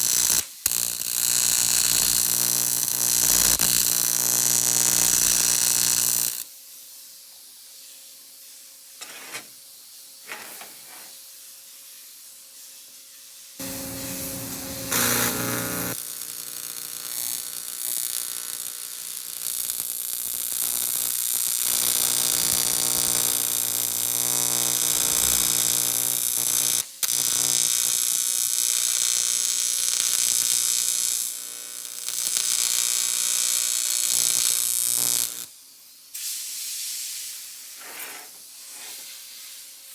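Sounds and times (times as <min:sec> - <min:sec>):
welding arc buzzing hiss: 0:00.0 - 0:11.4, 0:13.5 - 0:39.9
steady machine hum: 0:13.6 - 0:16.0.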